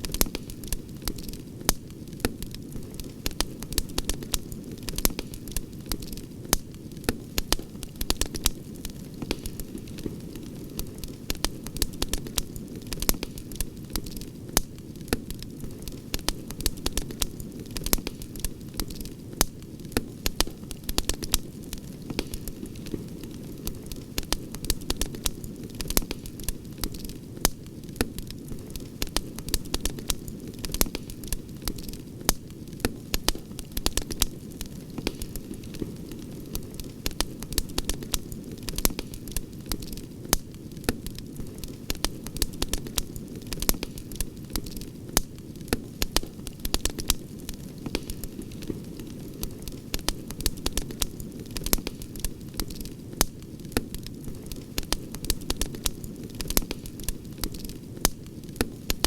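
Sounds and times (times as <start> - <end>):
campfire pops and snaps: 0.0 - 59.0.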